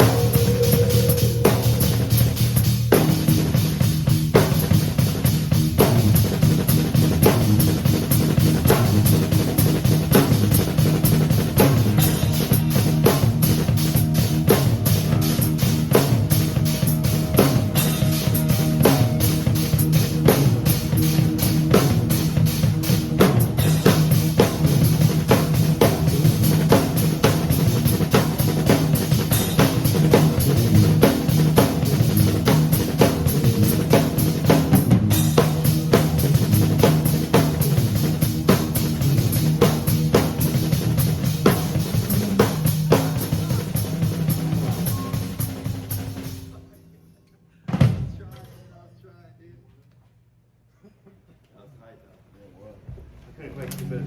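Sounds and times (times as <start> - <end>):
rock band playing instrumental: 0.0 - 46.5
drum kit hits: 0.0 - 46.6, 47.7 - 48.3.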